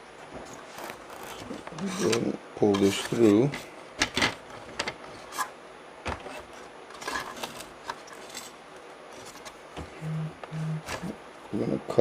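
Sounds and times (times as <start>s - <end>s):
cord scraping against plastic: 0.4s - 3.6s.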